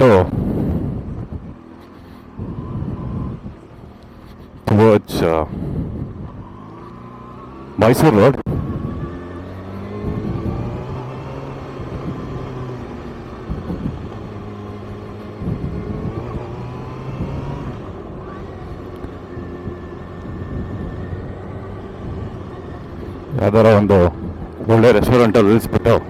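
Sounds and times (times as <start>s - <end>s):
motorcycle engine running: 5.5s - 26.0s.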